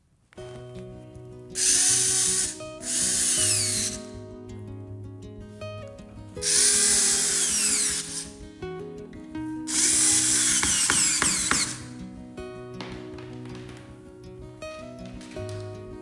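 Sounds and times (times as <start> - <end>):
background music: 0.4 - 16.0
electric power tool whine: 1.6 - 4.1, 6.4 - 8.5, 9.7 - 12.0.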